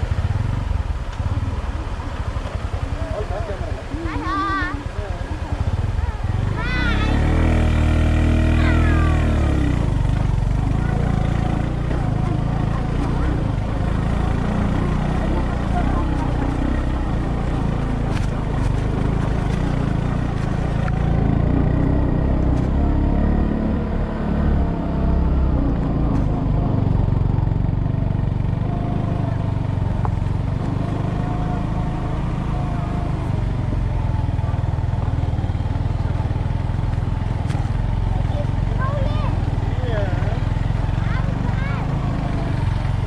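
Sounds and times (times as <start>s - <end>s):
ride noise: 0.0s - 43.0s
vehicle engine running: 0.0s - 43.0s.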